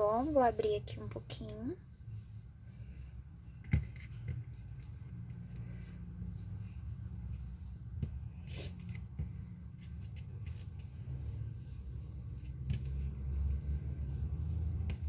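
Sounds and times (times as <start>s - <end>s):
hands tapping and rubbing clay: 2.9s - 5.9s, 7.1s - 11.2s, 12.2s - 15.0s.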